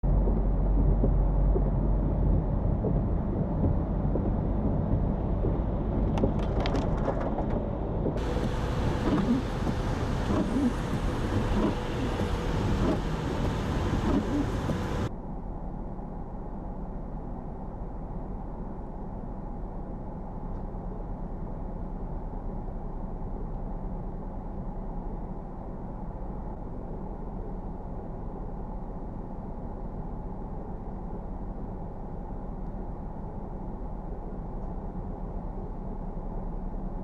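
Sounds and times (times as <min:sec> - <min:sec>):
road noise: 0:00.0 - 0:15.1
vehicle engine rumble: 0:00.0 - 0:37.0.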